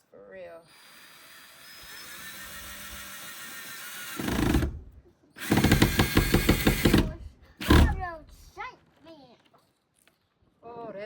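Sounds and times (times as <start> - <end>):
power drill driving into wood: 0.7 - 8.5.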